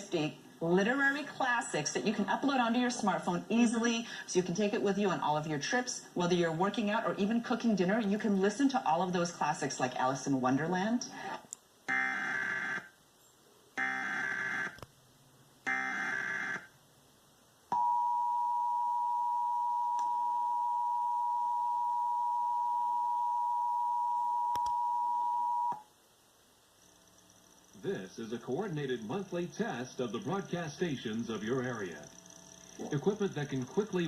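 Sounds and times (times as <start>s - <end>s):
two-tone attention signal: 17.7s - 25.8s.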